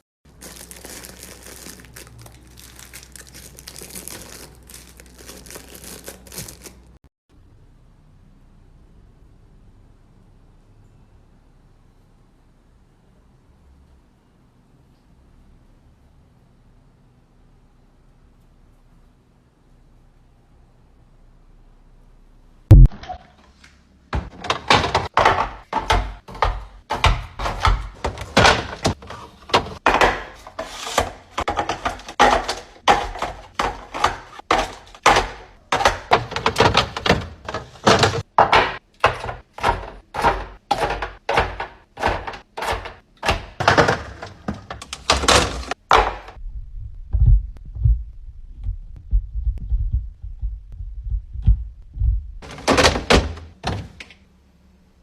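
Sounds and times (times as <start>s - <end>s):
rustling: 0.3s - 7.0s
objects knocking and clacking: 24.1s - 46.4s.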